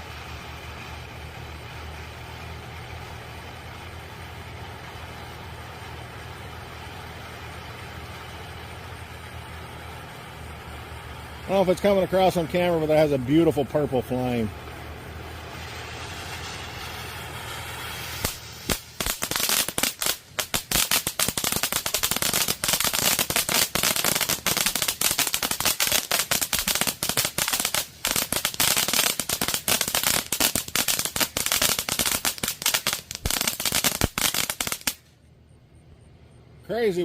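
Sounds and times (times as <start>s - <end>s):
firework fountain hissing: 0.0s - 35.1s
dense rapid crackle: 11.5s - 35.1s.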